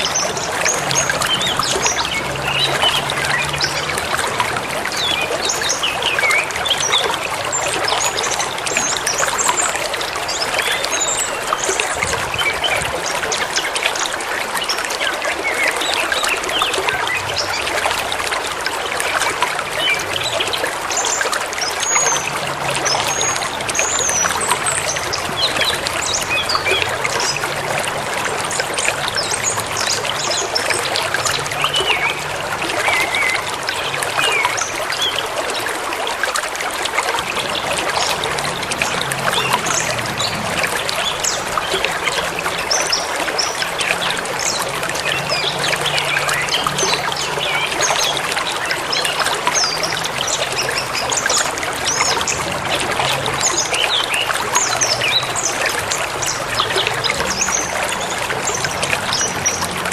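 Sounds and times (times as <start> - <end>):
river flowing: 0.0 - 59.9
songbirds chirping: 0.0 - 59.9.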